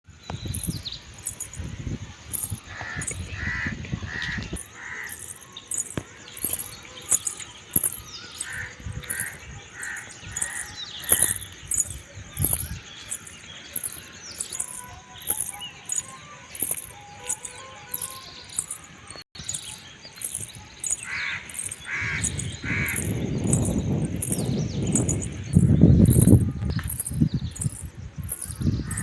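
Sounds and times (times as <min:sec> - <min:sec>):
high chirps: 0:00.3 - 0:03.4, 0:04.2 - 0:29.0
crows cawing: 0:02.7 - 0:05.2, 0:08.4 - 0:11.3, 0:21.0 - 0:23.0.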